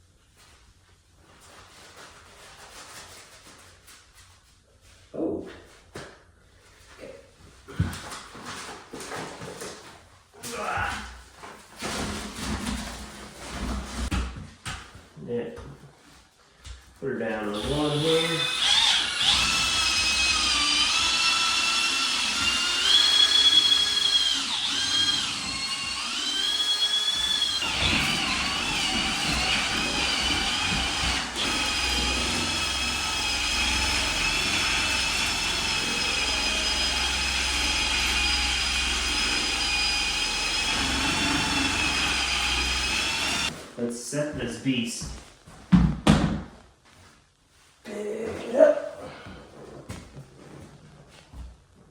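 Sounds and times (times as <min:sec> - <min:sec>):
power tool motor whining: 0:17.5 - 0:43.5.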